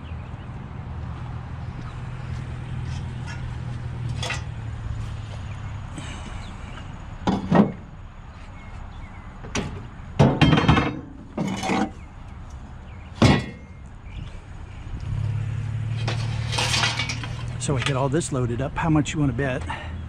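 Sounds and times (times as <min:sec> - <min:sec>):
scrap metal clanking: 0:02.8 - 0:04.7, 0:09.6 - 0:12.0, 0:13.2 - 0:13.8, 0:15.8 - 0:18.0.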